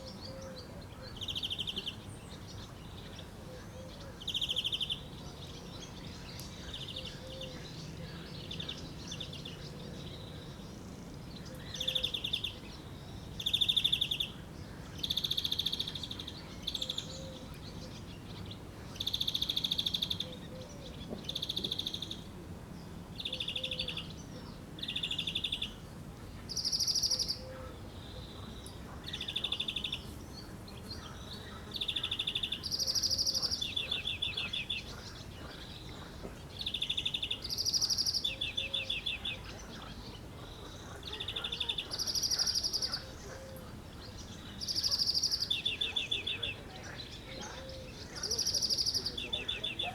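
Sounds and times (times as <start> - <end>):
songbird trilling: 11.6 - 18.1, 19.0 - 22.3, 23.2 - 24.2, 26.5 - 30.1, 30.8 - 49.9.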